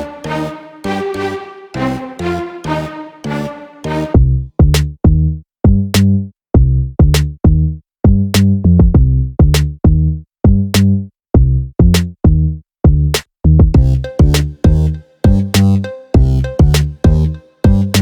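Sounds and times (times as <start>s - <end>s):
electronic music with drum-machine beat: 13.8s - 18.0s.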